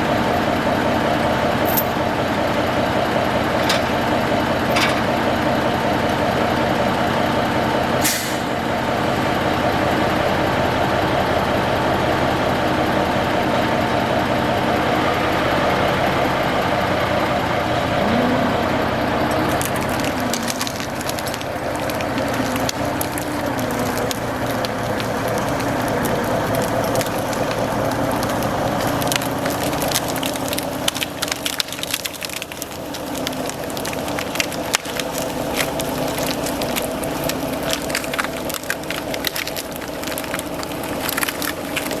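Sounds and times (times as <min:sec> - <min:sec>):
diesel truck engine running: 0:00.0 - 0:42.0
wood cracking and snapping: 0:19.2 - 0:42.0.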